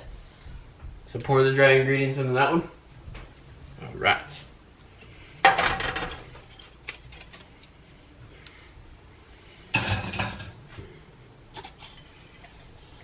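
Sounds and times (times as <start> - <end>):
kitchen utensils clattering: 5.4 - 7.3, 9.7 - 10.6.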